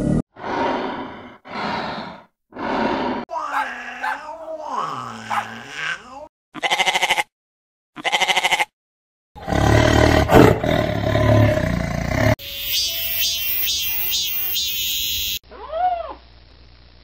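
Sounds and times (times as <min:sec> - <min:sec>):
quavering animal bleats: 0:06.6 - 0:07.3, 0:08.0 - 0:08.8.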